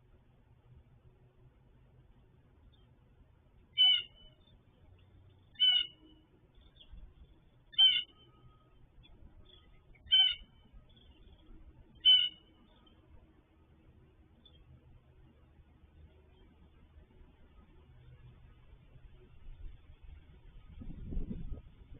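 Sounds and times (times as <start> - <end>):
animal mewing call: 3.8 - 4.3, 5.6 - 6.0, 7.7 - 8.2, 10.1 - 10.5, 12.0 - 12.4.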